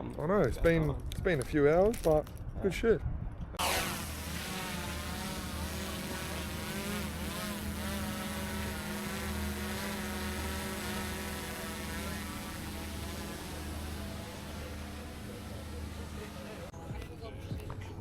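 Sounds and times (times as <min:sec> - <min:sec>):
wind: 0:00.0 - 0:18.0
motorboat engine running: 0:03.6 - 0:16.7
water hissing: 0:03.6 - 0:16.7.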